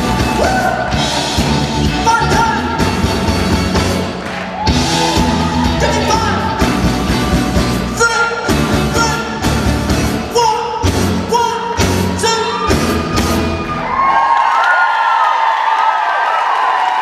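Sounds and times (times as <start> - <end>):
audience cheering: 0.0 - 7.6, 12.2 - 17.0
live pop band with man singing: 5.1 - 13.5.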